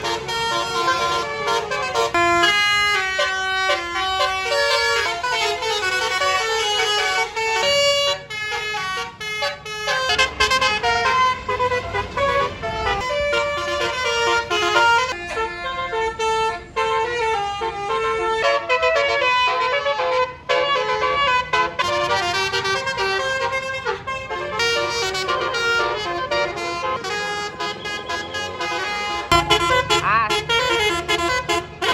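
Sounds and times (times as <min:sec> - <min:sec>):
musical air horns playing tune: 0:00.0 - 0:31.9.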